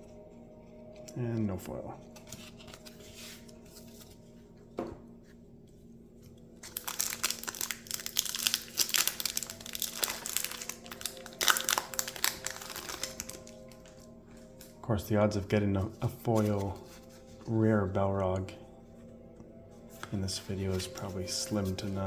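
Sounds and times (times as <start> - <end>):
plastic wrapper crinkling: 6.4 - 14.8.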